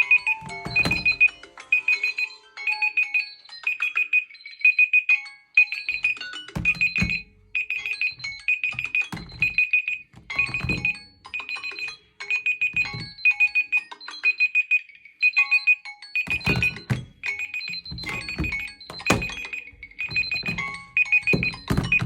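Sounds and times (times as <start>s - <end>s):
dull thumps: 0.4s - 1.3s, 6.6s - 9.6s, 10.2s - 11.2s, 12.8s - 13.2s, 16.3s - 22.0s
high electronic alert beeps: 16.3s - 22.0s.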